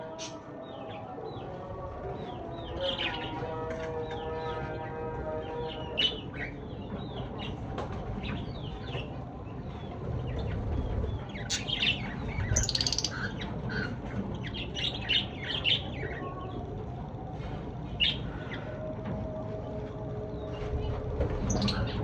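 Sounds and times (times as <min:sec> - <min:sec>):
steady low rumble: 0:08.2 - 0:18.3
lovebirds chirping: 0:12.4 - 0:13.3, 0:21.5 - 0:21.8.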